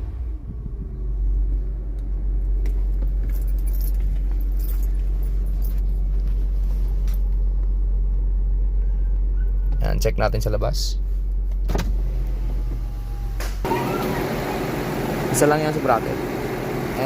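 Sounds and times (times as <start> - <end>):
car engine idling: 0.0 - 17.0
light metallic clicks and jingles: 2.8 - 6.4.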